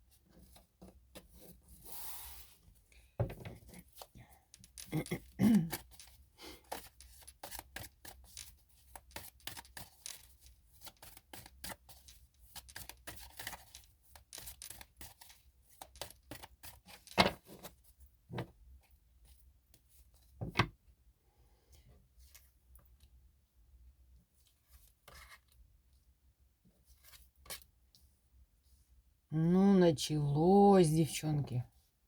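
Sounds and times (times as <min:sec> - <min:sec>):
cards flicking and rustling: 0:03.6 - 0:17.7.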